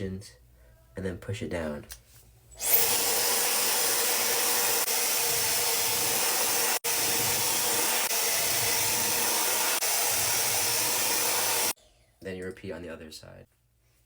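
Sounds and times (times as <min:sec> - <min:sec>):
hair dryer blowing: 0:02.6 - 0:11.8.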